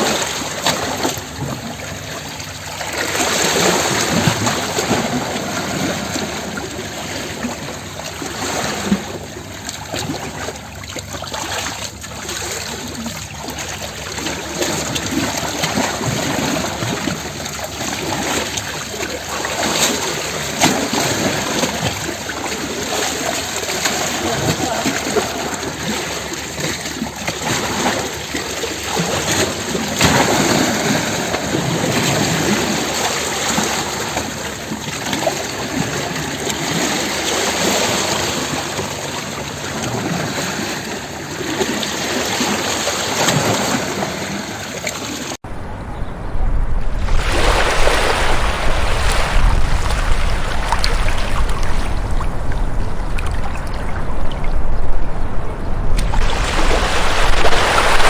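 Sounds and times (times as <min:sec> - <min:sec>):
waves splashing against rocks: 0:00.0 - 0:58.0
deep low rumble: 0:45.4 - 0:58.0.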